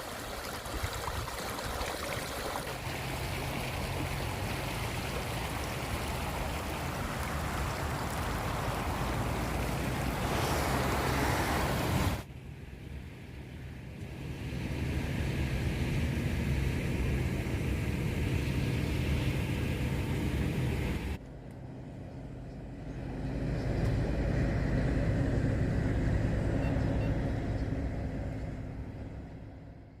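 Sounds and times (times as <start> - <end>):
hiss: 10.1 - 12.2.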